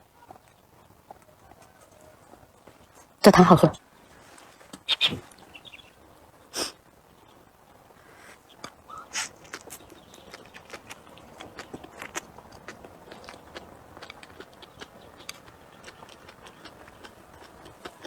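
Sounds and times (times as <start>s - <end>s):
person chewing: 8.4s - 18.0s.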